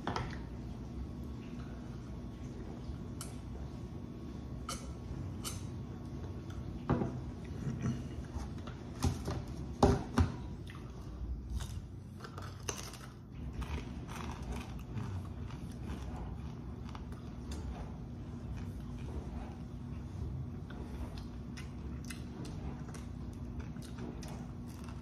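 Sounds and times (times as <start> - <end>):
crunching fried food: 11.5 - 17.8.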